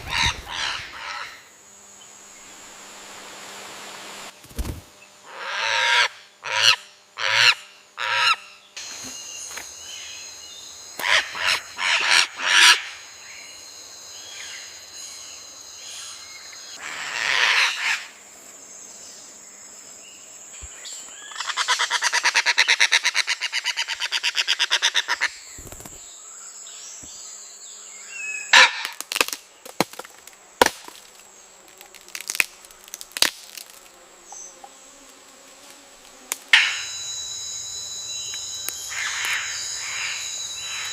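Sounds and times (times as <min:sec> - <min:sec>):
parrots squawking: 0:00.0 - 0:01.4, 0:05.3 - 0:08.4, 0:11.0 - 0:12.9, 0:16.8 - 0:18.1
high insect drone: 0:00.0 - 0:40.9.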